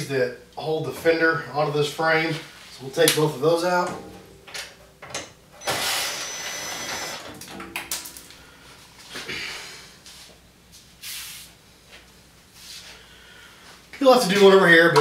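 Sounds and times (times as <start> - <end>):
power tool grating bursts: 5.6 - 7.3.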